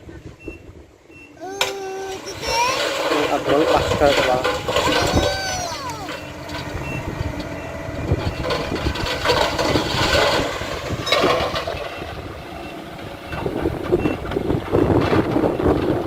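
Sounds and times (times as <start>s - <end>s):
heavy machinery engine running: 1.0s - 16.0s
clattering and knocking: 2.6s - 6.8s, 8.2s - 12.0s.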